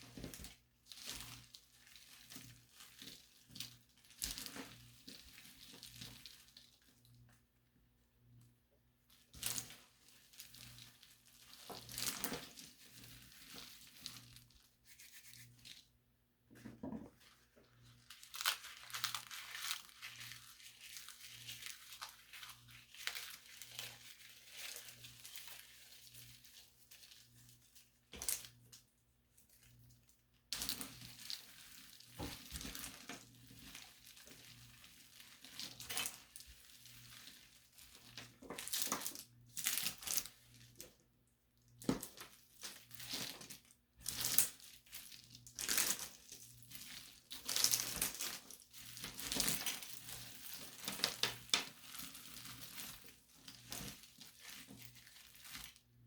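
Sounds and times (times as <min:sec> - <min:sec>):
brittle material crunching: 0:18.0 - 0:27.2, 0:41.9 - 0:55.8.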